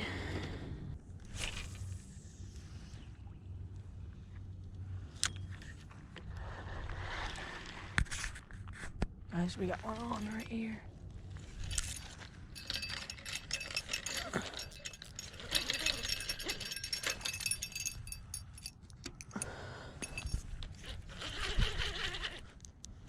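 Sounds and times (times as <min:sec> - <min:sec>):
fishing reel ticking rattle: 0:11.6 - 0:22.5.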